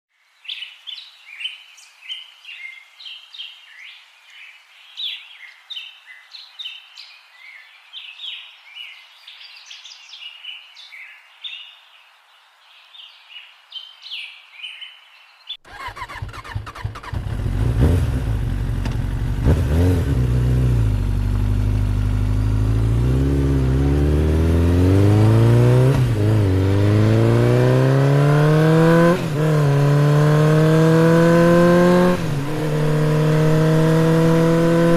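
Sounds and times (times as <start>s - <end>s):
birds chirping: 0.2s - 17.1s, 22.0s - 34.9s
vehicle engine accelerating: 15.7s - 34.9s.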